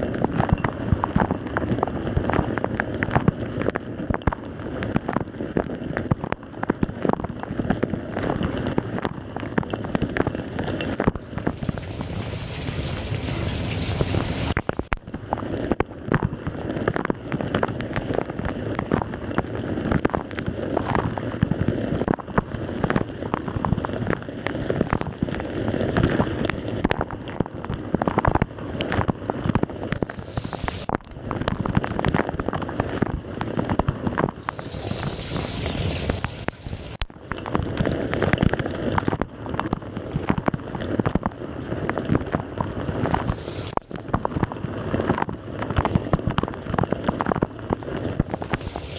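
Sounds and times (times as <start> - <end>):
dishwasher water jets spraying: 11.2 - 14.6, 34.5 - 37.0.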